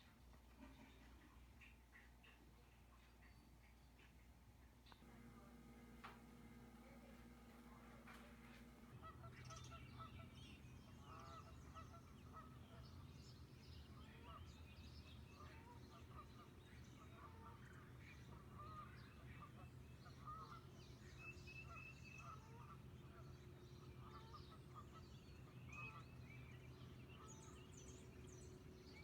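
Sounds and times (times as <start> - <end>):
steady low hum: 5.0 - 9.2
flock of geese honking: 5.1 - 10.3.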